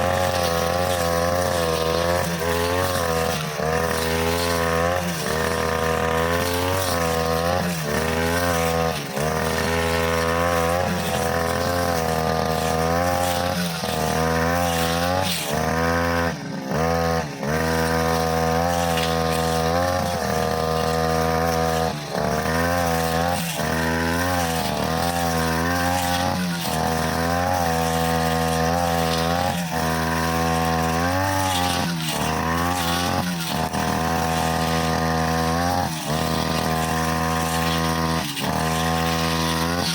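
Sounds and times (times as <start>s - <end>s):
brushcutter cutting grass: 0.0s - 39.9s.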